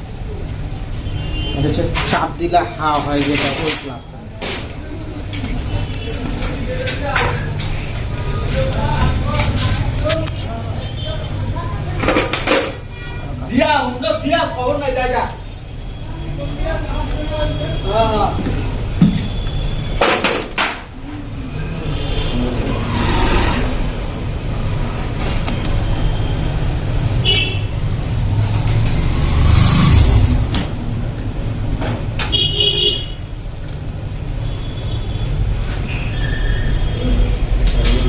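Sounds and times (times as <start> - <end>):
metal tools clinking and knocking: 2.9 - 4.7, 37.6 - 38.0.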